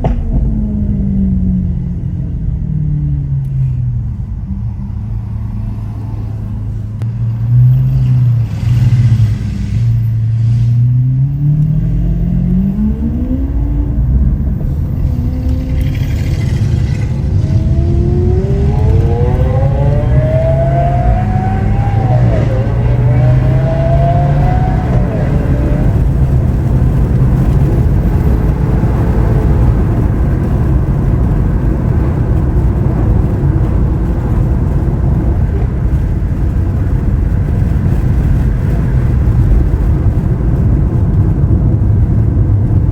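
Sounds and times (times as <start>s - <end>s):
car engine accelerating: 0.0s - 42.9s.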